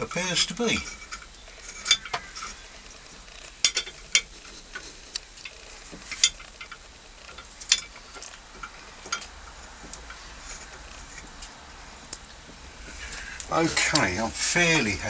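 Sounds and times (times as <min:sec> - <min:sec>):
metal parts clicking and clinking: 0:00.0 - 0:11.3.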